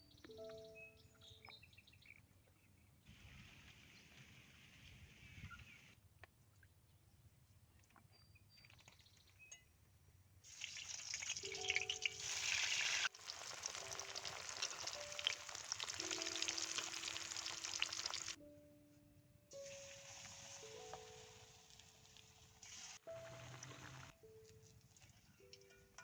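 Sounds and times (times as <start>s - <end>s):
soft background music: 0.0s - 3.0s, 11.0s - 26.0s
food sizzling in hot oil: 10.5s - 18.4s, 19.6s - 24.1s.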